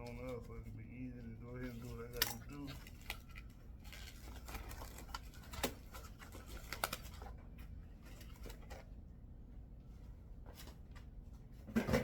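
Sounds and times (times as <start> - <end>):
scratchy rustling of packaging: 1.2 - 8.9.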